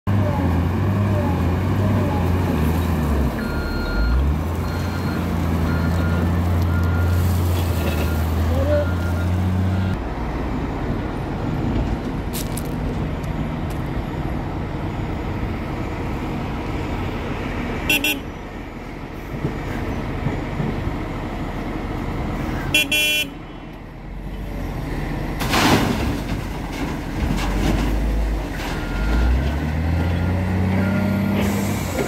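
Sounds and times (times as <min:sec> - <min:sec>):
heavy diesel engine: 0:00.1 - 0:32.0
reversing alarm beeping: 0:03.4 - 0:07.2, 0:07.8 - 0:10.0.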